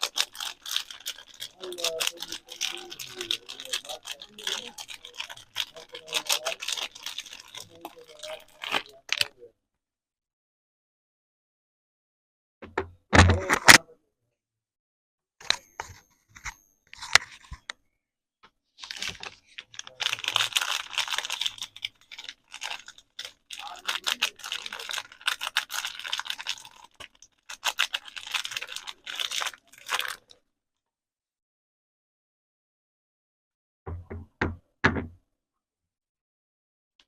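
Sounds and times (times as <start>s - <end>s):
wrapper crinkling and tearing: 0.0s - 9.3s, 18.8s - 30.4s.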